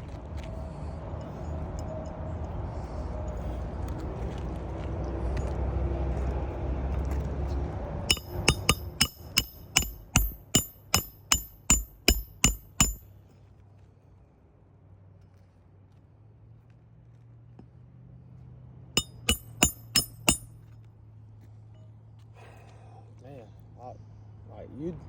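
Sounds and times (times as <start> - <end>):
hammer striking metal: 8.1 - 13.1, 19.0 - 20.5.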